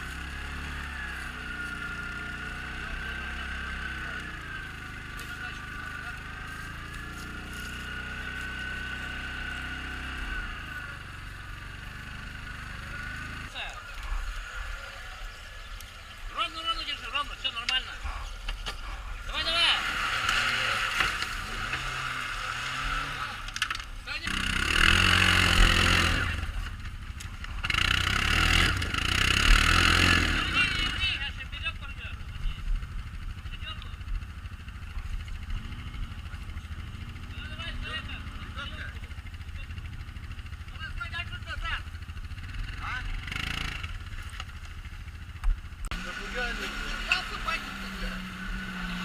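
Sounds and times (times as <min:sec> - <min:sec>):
quad bike engine running: 0:00.0 - 0:49.0.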